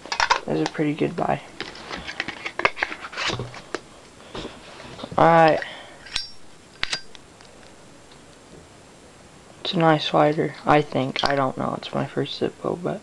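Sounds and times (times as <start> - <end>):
person speaking: 0.4 - 1.7, 5.0 - 5.9, 9.6 - 13.0.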